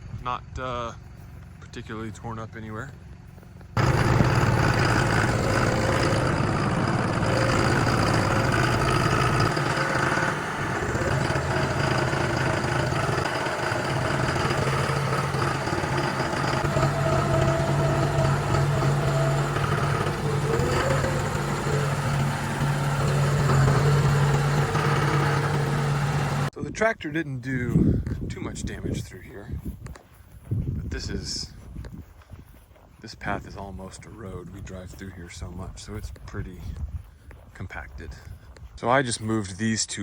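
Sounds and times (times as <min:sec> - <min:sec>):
farm vehicle engine running: 0:00.7 - 0:26.5.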